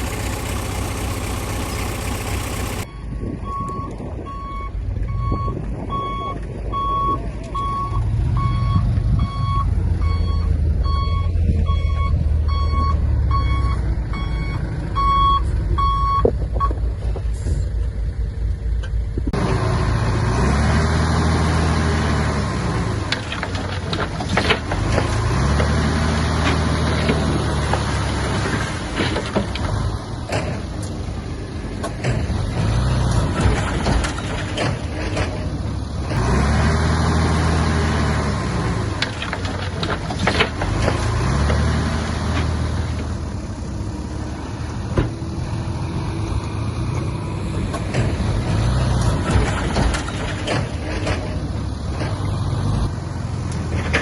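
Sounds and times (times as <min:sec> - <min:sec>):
heavy diesel engine: 0:00.0 - 0:54.0
reversing alarm beeping: 0:02.3 - 0:16.8.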